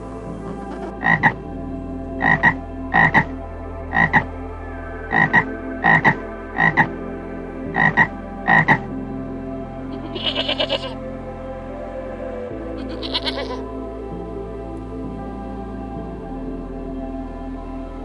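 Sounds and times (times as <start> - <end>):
steady background tones: 0.0 - 10.1
animal calling in double notes: 5.1 - 6.9, 7.8 - 8.8.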